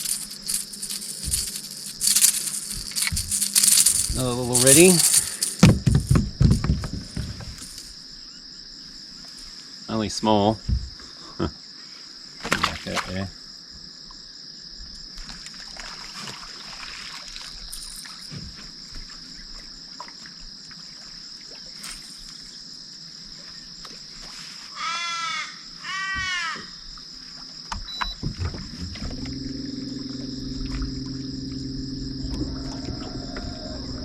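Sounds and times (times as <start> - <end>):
high hum of insects: 0.0 - 34.0
crow cawing: 24.8 - 26.7
low motor hum: 28.2 - 34.0.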